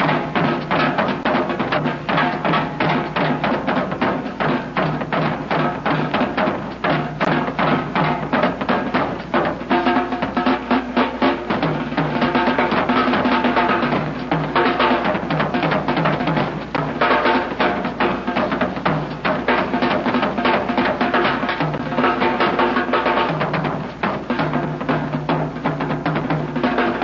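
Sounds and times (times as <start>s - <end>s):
fast drum strikes: 0.0s - 27.0s.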